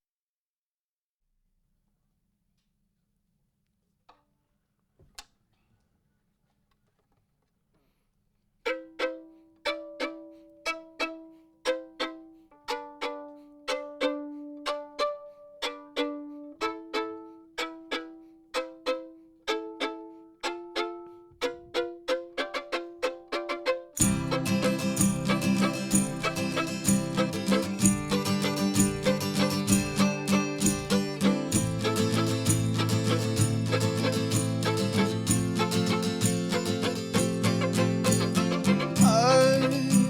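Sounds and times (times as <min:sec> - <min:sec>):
plucked string melody: 0:08.7 - 0:40.0.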